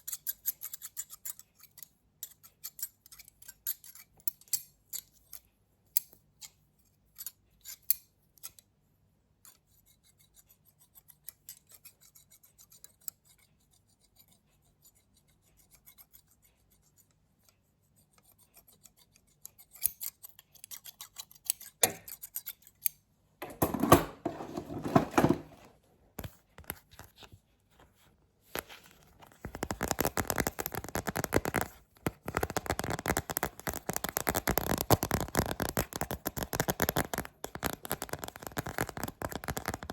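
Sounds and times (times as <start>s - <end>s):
scratching and rubbing on microphone: 28.6s - 39.9s.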